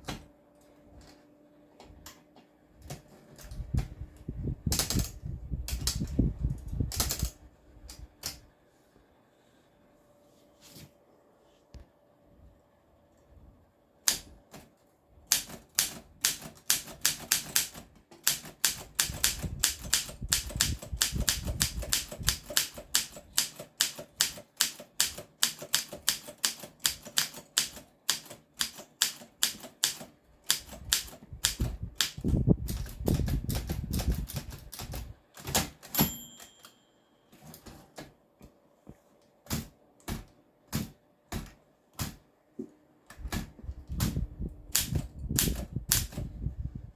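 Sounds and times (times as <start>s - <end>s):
typewriter key strikes: 15.3s - 31.6s
typewriter bell ring: 35.9s - 37.1s.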